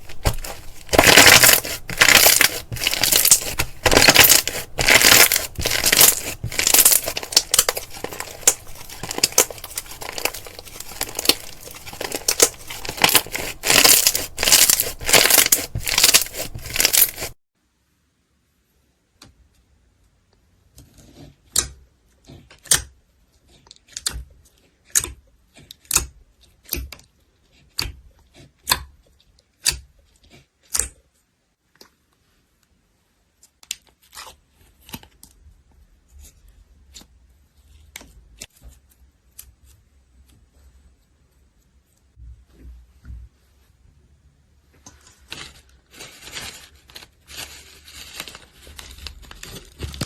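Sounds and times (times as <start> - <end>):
slime popping and crackling: 0.0 - 17.4.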